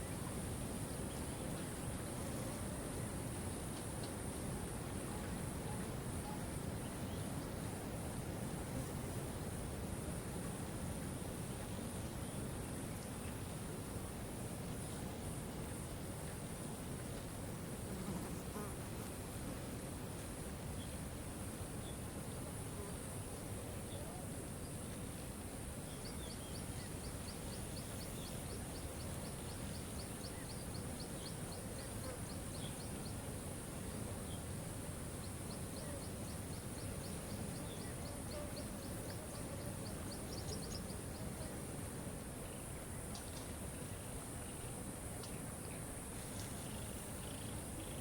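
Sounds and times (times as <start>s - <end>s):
high steady hiss: 0.0s - 48.0s
faint bird chirps: 25.8s - 33.4s, 35.2s - 41.6s.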